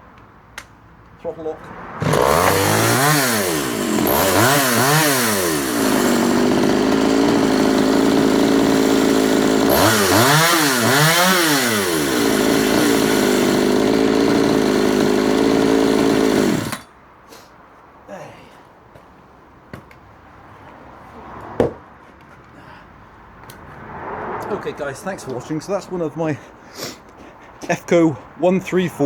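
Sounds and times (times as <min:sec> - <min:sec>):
chainsaw revving and idling: 0:02.0 - 0:16.9.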